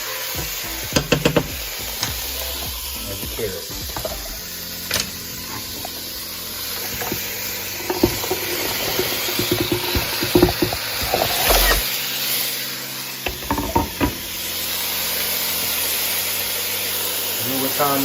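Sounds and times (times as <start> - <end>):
food sizzling in a hot pan: 0.0 - 18.0
utensil scraping against pan: 6.8 - 11.8.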